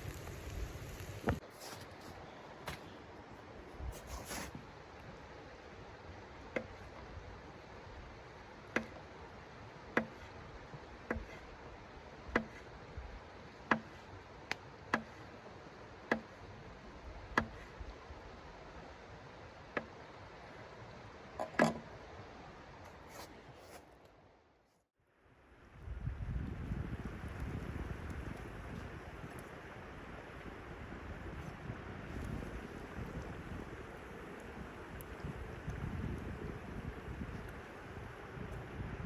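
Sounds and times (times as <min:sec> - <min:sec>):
steady hiss: 0:00.0 - 0:02.9.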